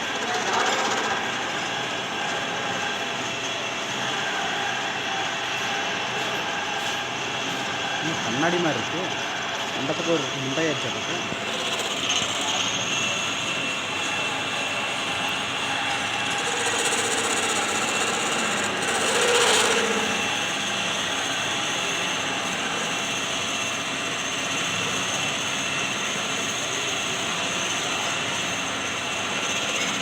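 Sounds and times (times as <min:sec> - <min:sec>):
lathe running: 0:00.0 - 0:30.0
thin high whine: 0:10.2 - 0:29.7.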